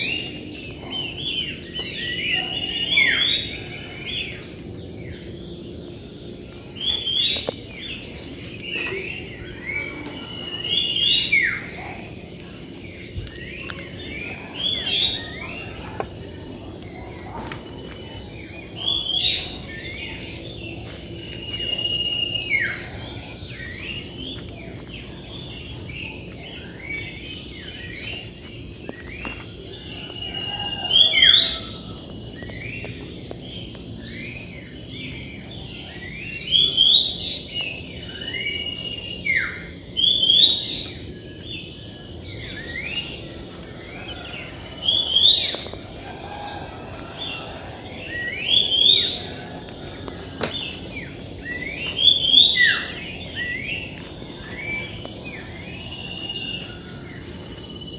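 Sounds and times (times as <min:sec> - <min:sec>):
insects droning: 0:00.0 - 0:57.9
wild birds chirping: 0:00.0 - 0:57.9.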